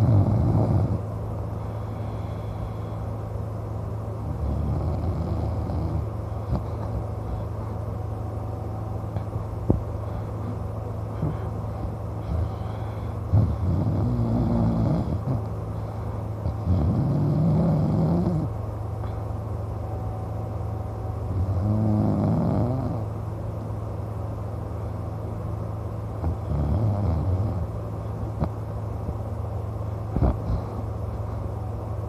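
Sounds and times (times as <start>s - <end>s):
man snoring: 0.0s - 1.0s, 4.2s - 6.6s, 11.2s - 15.5s, 16.5s - 18.5s, 21.4s - 23.1s, 26.2s - 27.7s
steady low hum: 0.0s - 32.0s.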